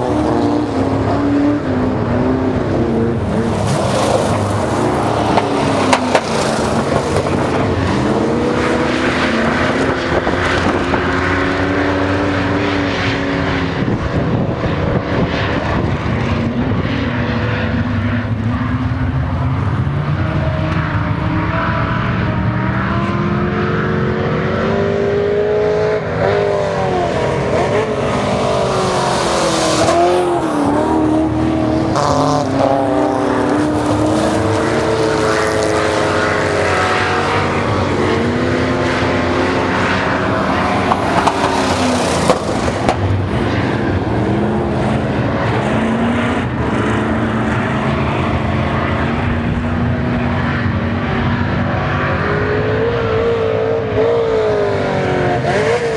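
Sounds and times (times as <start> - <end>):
race car engines revving: 0.0 - 55.9.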